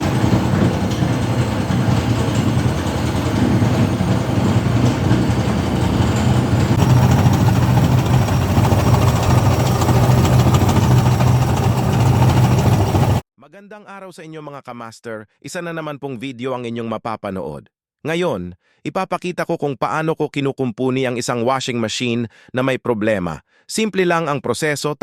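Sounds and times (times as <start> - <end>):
dense rattling: 0.0 - 13.2
washing machine drum spinning: 0.0 - 13.2.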